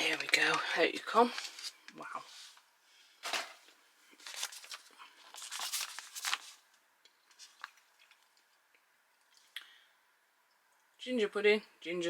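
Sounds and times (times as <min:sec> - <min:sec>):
foil packaging crinkling: 0:00.0 - 0:01.9, 0:03.2 - 0:08.2.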